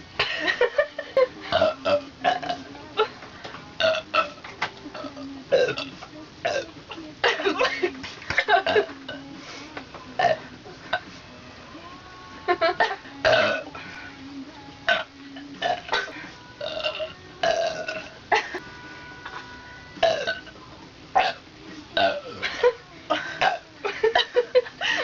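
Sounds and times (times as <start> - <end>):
person burping loudly: 1.5 - 2.7, 3.8 - 6.7, 8.4 - 9.2, 10.2 - 11.0, 13.2 - 13.8, 14.9 - 18.4, 20.0 - 20.5, 21.2 - 21.4, 22.0 - 22.5, 23.4 - 23.6.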